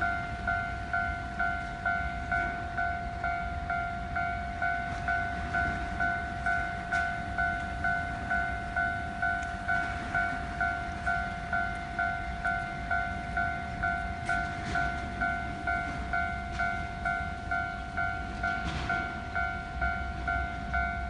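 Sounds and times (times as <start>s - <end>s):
constant low rumble: 0.0s - 21.0s.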